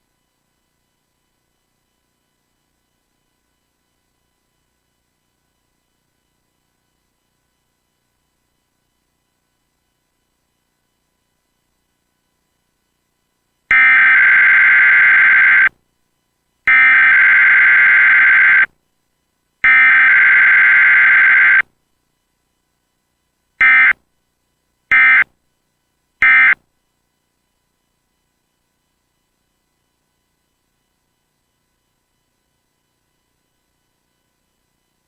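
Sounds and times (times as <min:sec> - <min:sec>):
screeching digital data bursts: 0:13.7 - 0:15.7, 0:16.7 - 0:18.7, 0:19.6 - 0:21.6, 0:23.6 - 0:23.9, 0:24.9 - 0:25.2, 0:26.2 - 0:26.6
short end-of-message bursts: 0:13.7 - 0:15.7, 0:16.7 - 0:18.7, 0:19.6 - 0:21.6, 0:23.6 - 0:23.9, 0:24.9 - 0:25.2, 0:26.2 - 0:26.6.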